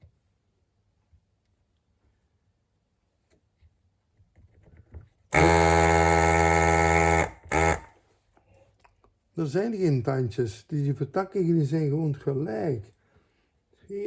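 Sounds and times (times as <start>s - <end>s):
vacuum pump buzzing: 5.3s - 7.9s.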